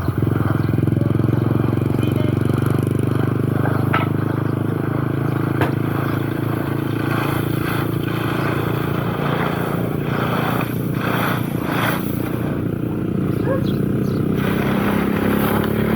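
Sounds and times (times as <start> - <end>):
engine running: 0.0 - 15.9.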